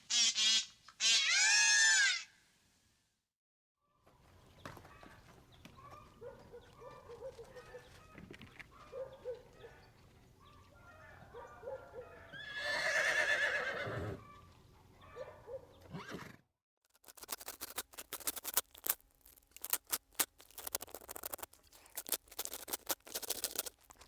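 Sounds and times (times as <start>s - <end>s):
foal whinnying: 1.0s - 2.3s, 12.4s - 14.2s.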